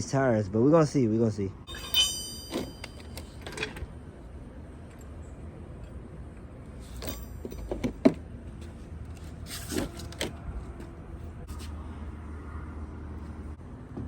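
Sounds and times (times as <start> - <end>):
clunks and knocks of tools: 1.8 - 3.9, 7.0 - 8.2.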